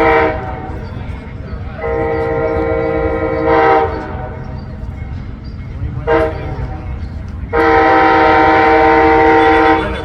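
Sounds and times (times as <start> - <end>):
locomotive air horn: 0.0 - 0.8, 1.8 - 4.5, 6.0 - 6.8, 7.5 - 10.0
train rumbling: 0.0 - 10.0.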